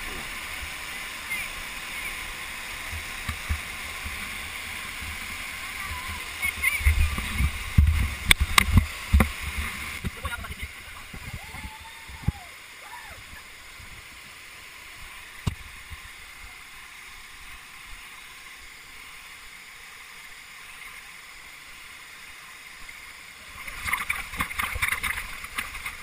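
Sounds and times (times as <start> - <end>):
water rushing: 0.0 - 26.0
crackling splashy noise: 23.6 - 26.0.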